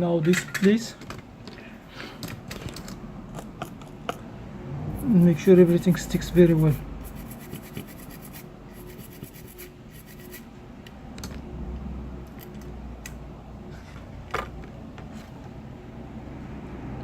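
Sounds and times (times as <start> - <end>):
metal tool scratching and clicking: 5.0 - 10.4.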